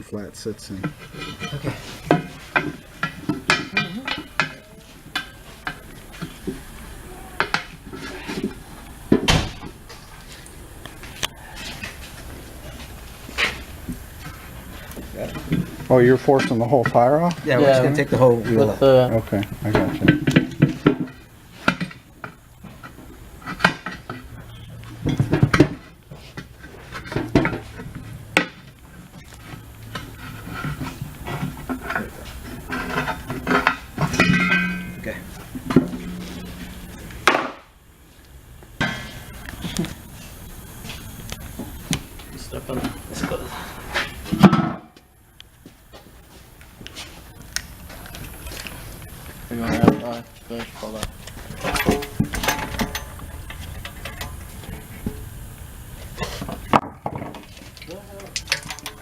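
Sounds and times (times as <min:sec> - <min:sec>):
steady low hum: 0:00.0 - 0:59.0
metal tools clanking: 0:00.7 - 0:06.3, 0:29.9 - 0:37.4, 0:51.5 - 0:54.5.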